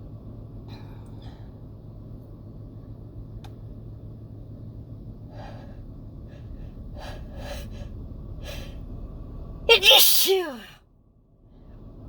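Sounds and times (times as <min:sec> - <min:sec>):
person gasping before sneeze: 0:09.7 - 0:10.7.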